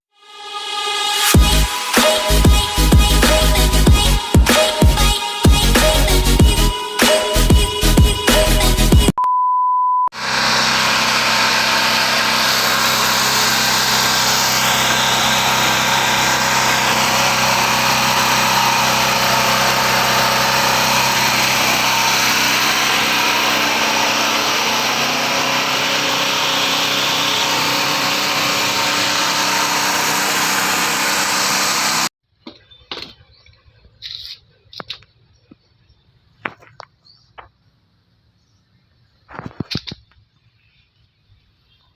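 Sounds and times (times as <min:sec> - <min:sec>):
generator engine running: 0:01.4 - 0:09.1, 0:10.2 - 0:32.1
short steady beep: 0:09.2 - 0:10.2.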